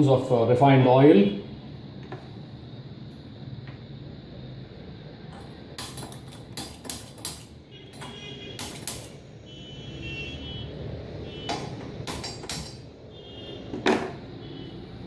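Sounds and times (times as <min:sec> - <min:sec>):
steady low hum: 0:00.0 - 0:15.0
utensils knocking against pan: 0:05.4 - 0:09.1, 0:11.5 - 0:12.9.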